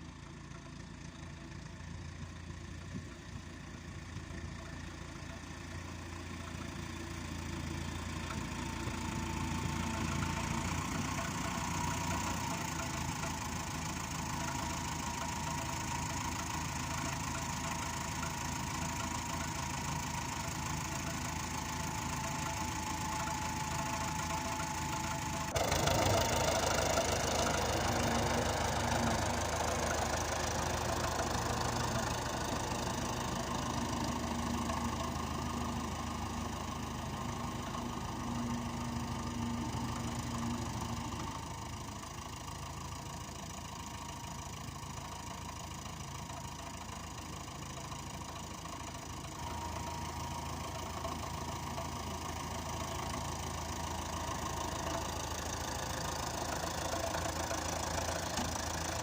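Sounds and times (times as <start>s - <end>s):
tractor diesel engine clatter: 0.0s - 59.0s.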